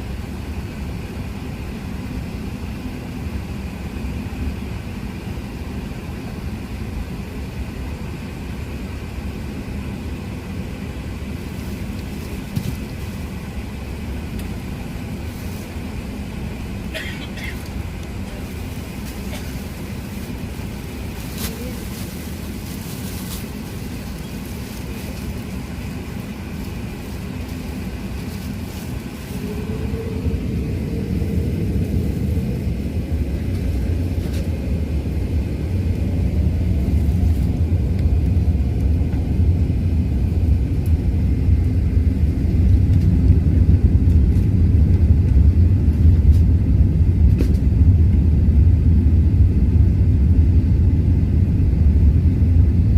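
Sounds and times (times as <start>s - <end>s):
airplane cabin rumble: 0.0s - 52.9s
jet engine whine rising: 22.3s - 52.9s.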